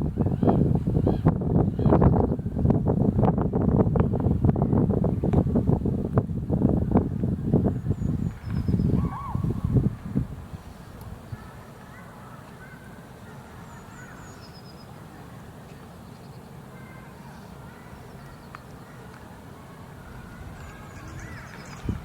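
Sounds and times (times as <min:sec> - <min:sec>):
bird calls: 0:07.8 - 0:09.6, 0:10.8 - 0:15.0, 0:15.7 - 0:19.2, 0:20.0 - 0:22.0.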